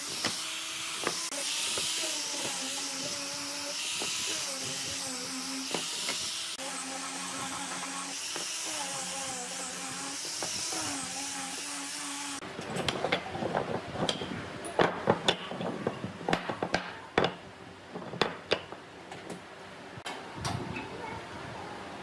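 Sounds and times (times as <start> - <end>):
power tool motor whining: 0.0 - 12.4.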